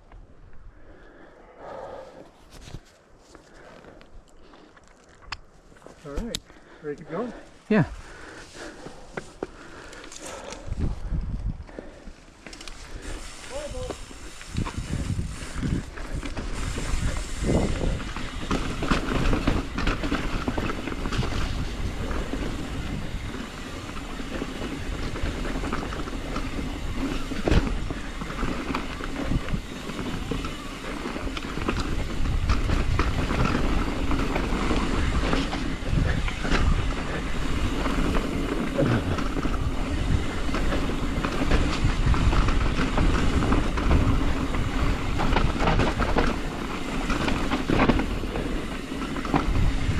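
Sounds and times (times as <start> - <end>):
bike tyres on dirt: 0.0 - 49.9
bike knocks and rattles: 13.1 - 49.9.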